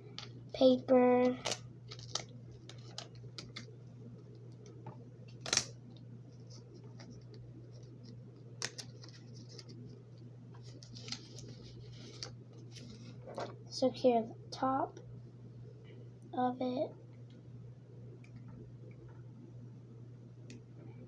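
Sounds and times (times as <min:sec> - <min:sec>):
steady low hum: 0:00.0 - 0:21.0
paper rustling: 0:06.4 - 0:09.8, 0:10.6 - 0:13.5.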